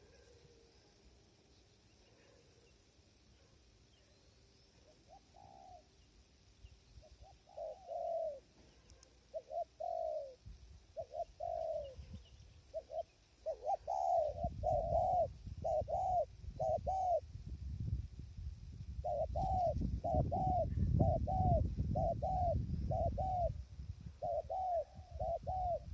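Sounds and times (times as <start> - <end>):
dove cooing: 0.0 - 0.6, 4.8 - 6.0, 7.0 - 17.3, 19.0 - 25.9
wind buffeting microphone: 14.2 - 25.9.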